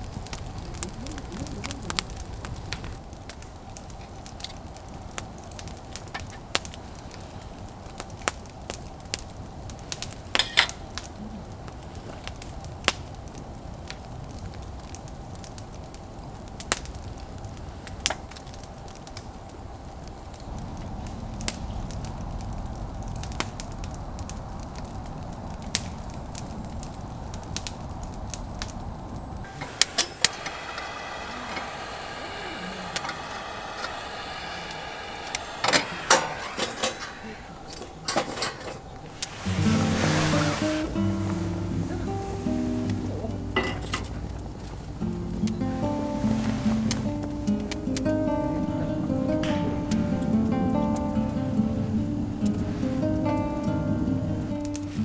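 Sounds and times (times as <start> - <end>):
campfire popping and crackling: 0.0 - 55.0
steady high hiss: 0.0 - 55.0
low rumble: 39.3 - 54.7.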